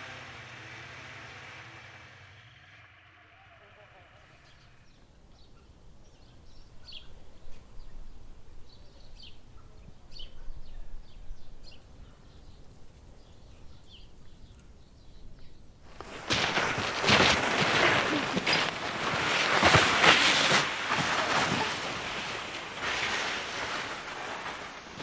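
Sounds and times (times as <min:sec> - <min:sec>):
loud rushing noise: 0:00.0 - 0:04.4
faint background noise: 0:00.0 - 0:25.0
small birds chirping: 0:03.9 - 0:19.8.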